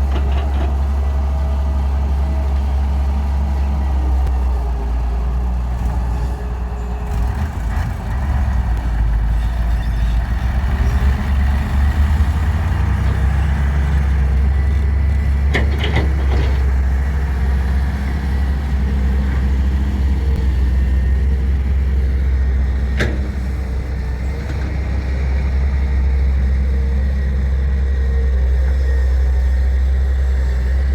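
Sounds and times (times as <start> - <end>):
heavy diesel engine humming: 0.0 - 30.9.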